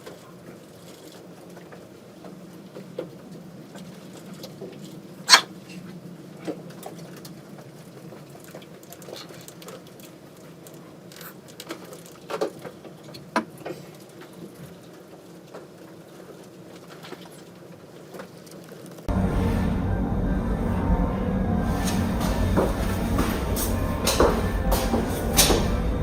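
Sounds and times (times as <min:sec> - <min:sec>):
loud rumbling noise: 0:19.1 - 0:26.0
low hum: 0:19.1 - 0:26.0.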